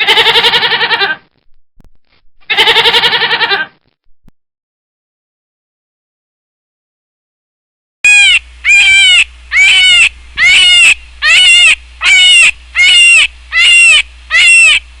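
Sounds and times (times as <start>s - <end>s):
farm animal calling: 0.0s - 1.2s, 2.5s - 3.7s, 8.1s - 14.9s.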